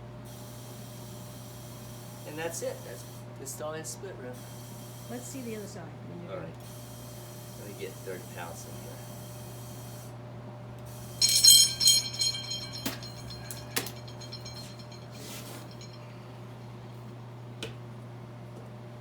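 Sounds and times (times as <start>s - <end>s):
metallic ringing and clinking: 11.2s - 16.1s.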